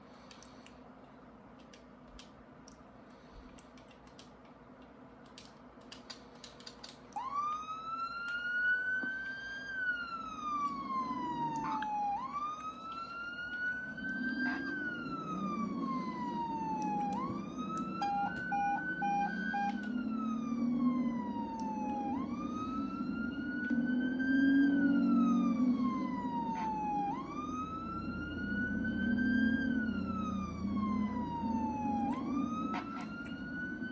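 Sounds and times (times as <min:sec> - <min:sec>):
siren wailing: 0:07.2 - 0:33.9.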